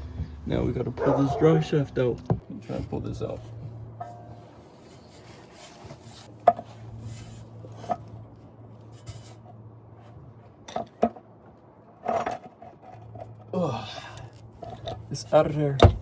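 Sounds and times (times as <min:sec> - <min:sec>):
scraping metal clunk: 0:02.3 - 0:08.1
metal knocks and clunks: 0:15.8 - 0:16.0.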